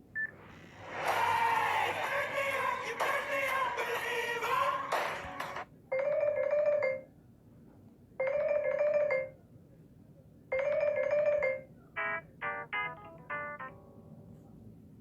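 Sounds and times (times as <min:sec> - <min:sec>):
marimba phone tone melody: 0:05.9 - 0:07.1, 0:10.6 - 0:13.9.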